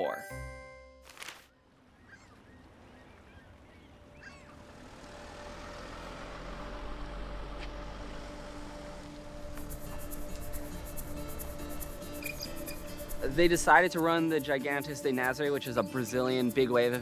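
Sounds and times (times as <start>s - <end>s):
rushing outdoor noise: 1.6s - 13.8s
short bird calls: 1.7s - 4.8s.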